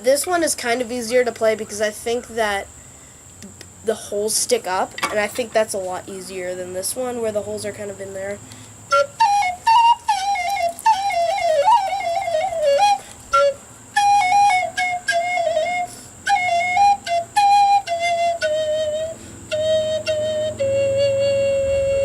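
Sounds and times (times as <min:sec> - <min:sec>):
plastic recorder flute melody: 0:08.9 - 0:22.0.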